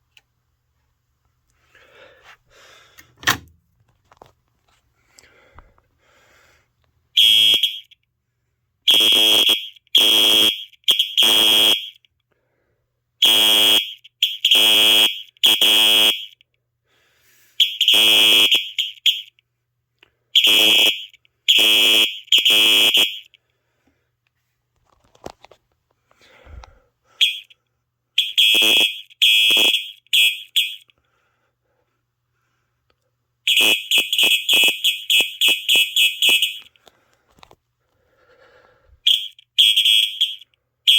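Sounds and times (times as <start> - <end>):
fire alarm horn blasts: 7.2 - 8.0, 8.9 - 12.1, 13.2 - 16.4, 17.6 - 19.3, 20.4 - 23.4, 27.2 - 27.5, 28.2 - 30.9, 33.5 - 36.8, 39.0 - 40.9.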